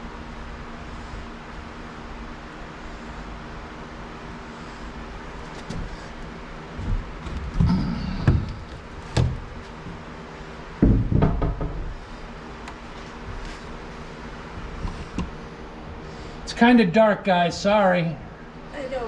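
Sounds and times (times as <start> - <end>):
steady low hum: 0.0 - 19.0
cable knocking against wood framing: 6.8 - 9.5, 10.8 - 12.0.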